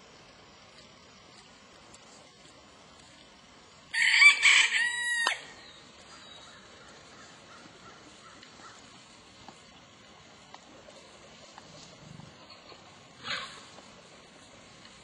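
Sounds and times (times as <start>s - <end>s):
rooster crowing: 3.9s - 5.6s.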